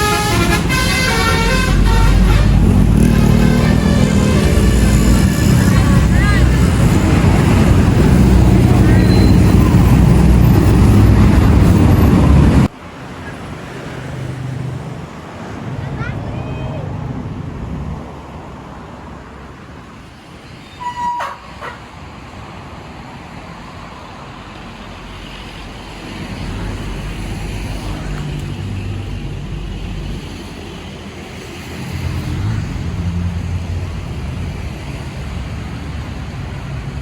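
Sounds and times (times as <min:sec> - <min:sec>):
heavy vehicle engine rumbling: 0:00.0 - 0:18.8
roadside traffic: 0:00.0 - 0:37.0.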